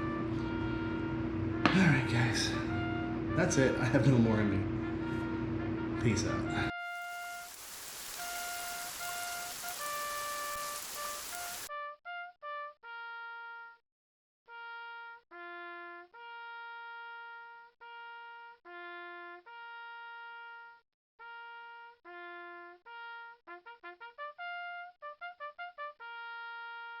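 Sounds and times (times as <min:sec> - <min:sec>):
solo trumpet-like melody: 0:04.8 - 0:13.8, 0:14.5 - 0:27.0.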